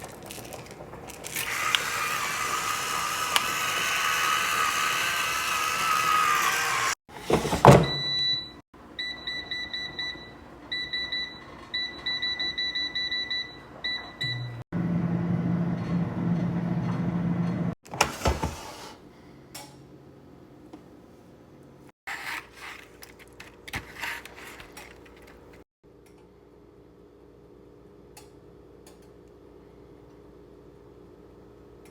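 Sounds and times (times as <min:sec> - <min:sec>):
air fryer fan humming: 0:00.8 - 0:07.0.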